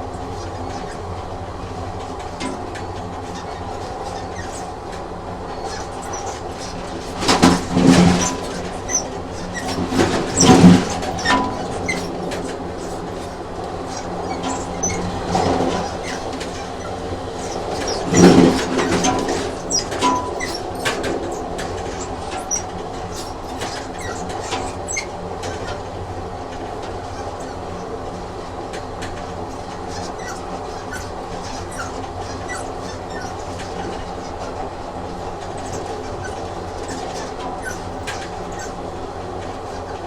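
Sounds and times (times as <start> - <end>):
train mechanical hum: 0.0 - 40.0
short high squeaks: 2.4 - 4.8, 5.5 - 25.8, 27.0 - 28.0, 29.6 - 38.8.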